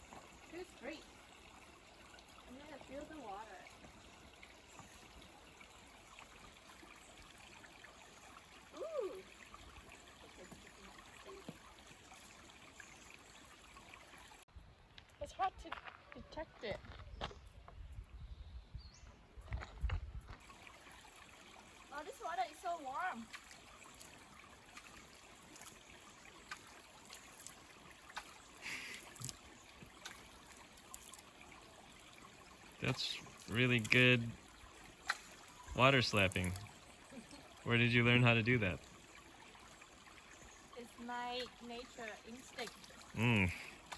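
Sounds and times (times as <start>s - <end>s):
faint creek water running: 0.0s - 43.9s
hands splashing water: 26.4s - 31.3s, 35.0s - 36.7s.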